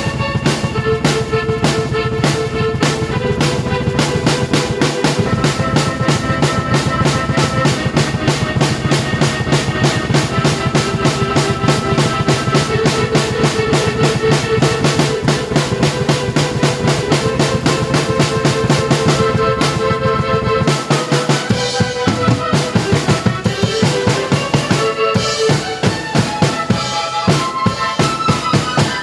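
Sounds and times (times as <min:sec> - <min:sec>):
drum kit played fast: 0:00.0 - 0:29.0
sustained keyboard notes: 0:00.0 - 0:29.0.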